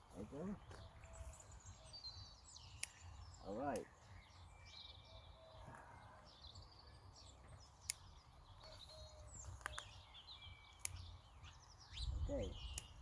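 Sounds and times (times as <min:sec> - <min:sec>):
small birds chirping and trilling: 0:00.0 - 0:13.0
sharp clicks: 0:02.7 - 0:03.1, 0:12.7 - 0:13.0.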